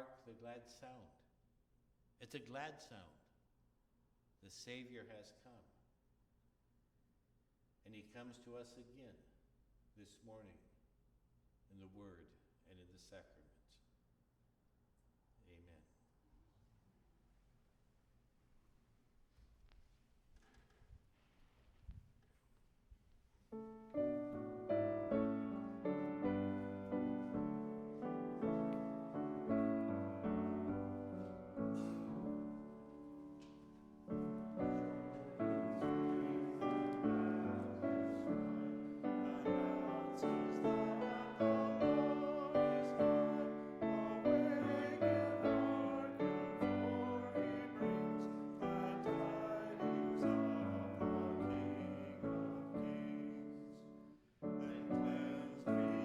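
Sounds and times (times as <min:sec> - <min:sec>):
piano playing slow hymn: 0:23.6 - 0:56.0.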